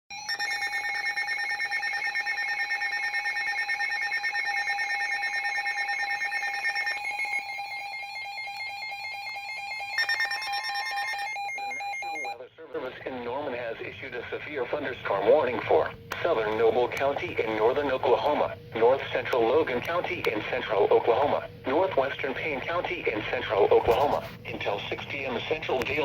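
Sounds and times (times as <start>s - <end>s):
fast-pulsing electronic alarm tone: 0.1s - 12.4s.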